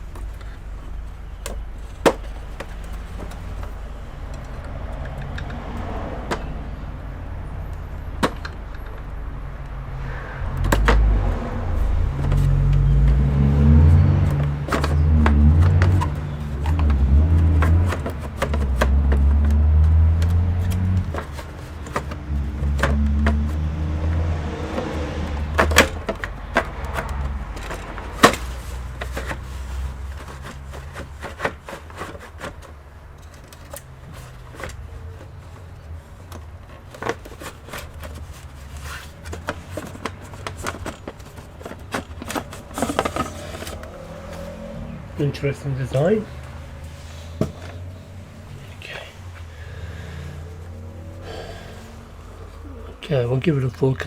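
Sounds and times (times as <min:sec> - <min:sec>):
computer parts clicking and knocking: 0:00.0 - 0:09.4, 0:10.5 - 0:11.3, 0:14.1 - 0:34.8.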